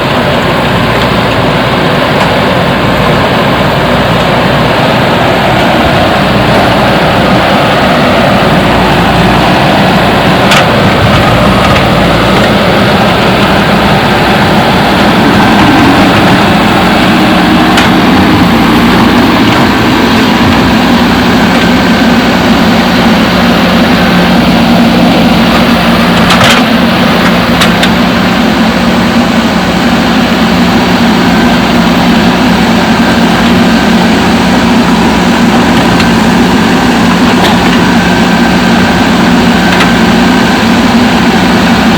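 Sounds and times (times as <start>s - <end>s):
diesel engine running: 0.0s - 41.9s.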